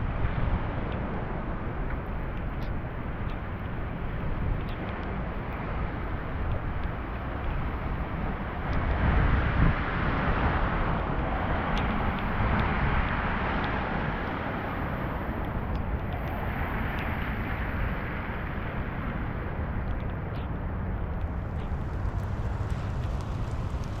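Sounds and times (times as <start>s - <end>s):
steady rain falling: 21.1s - 24.0s
low rumble: 21.2s - 24.0s.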